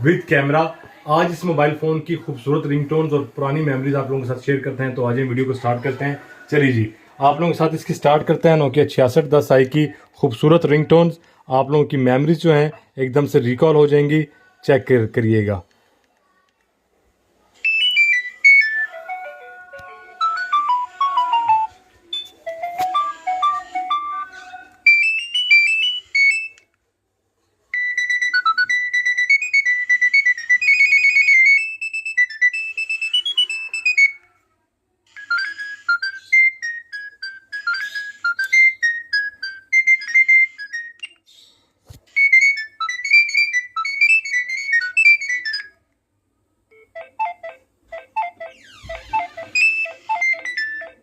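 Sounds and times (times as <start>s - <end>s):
mobile phone ringtones: 17.6s - 26.6s, 27.8s - 34.3s, 35.1s - 41.2s, 42.1s - 45.8s, 46.7s - 51.0s.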